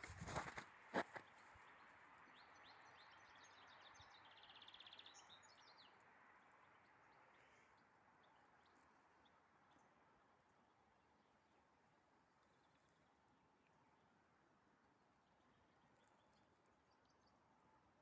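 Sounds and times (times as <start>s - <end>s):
footsteps crunching on snow: 0.0s - 1.3s.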